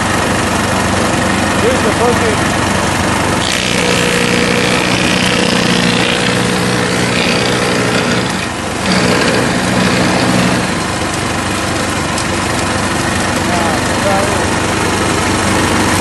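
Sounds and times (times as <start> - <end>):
wood chipper engine humming: 0.0 - 16.0
branch grinding in chipper: 0.1 - 16.0.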